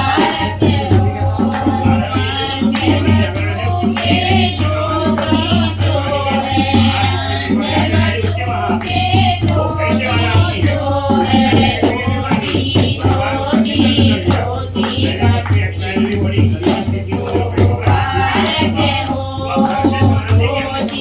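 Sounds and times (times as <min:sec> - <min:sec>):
folk song singing: 0:00.0 - 0:21.0
hand drum and jingle percussion: 0:00.0 - 0:21.0.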